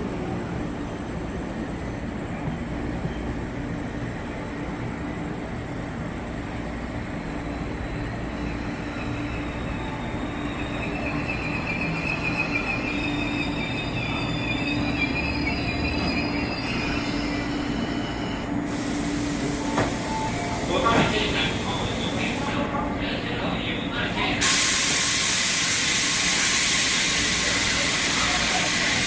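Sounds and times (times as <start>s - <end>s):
train rumble and hum: 0.0s - 29.0s
high wheel squeal: 7.7s - 18.6s.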